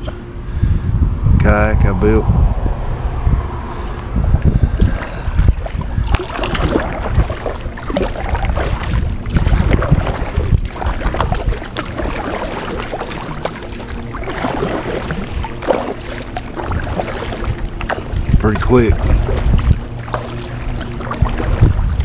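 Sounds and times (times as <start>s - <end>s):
wind buffeting microphone: 0.0s - 22.0s
paddle splashing in water: 4.8s - 22.0s.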